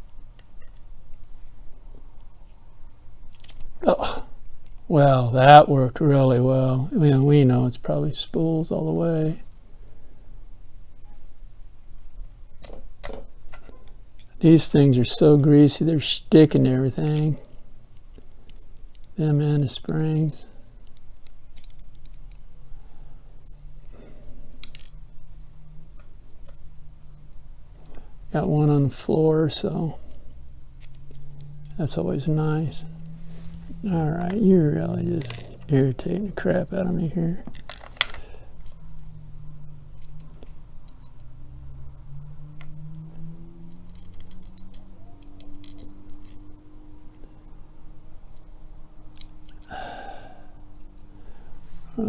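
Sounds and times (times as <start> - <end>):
low steady hum: 0.0 - 52.0
small metallic clicks of lock parts: 3.3 - 3.8, 12.5 - 14.4, 17.0 - 20.0, 20.6 - 22.4, 24.5 - 25.0, 30.0 - 31.8, 35.2 - 35.7, 37.4 - 39.2, 39.9 - 41.4, 42.6 - 47.4, 49.1 - 49.7, 50.7 - 51.1.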